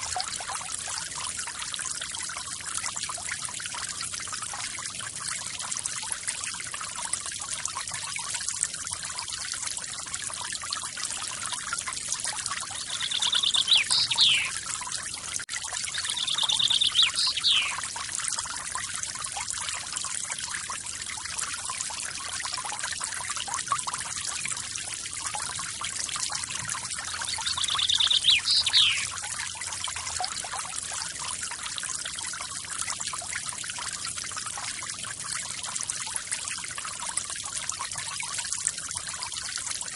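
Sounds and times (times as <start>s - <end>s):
bird buzzy trill call: 12.9s - 14.6s, 16.0s - 17.8s, 27.3s - 29.1s.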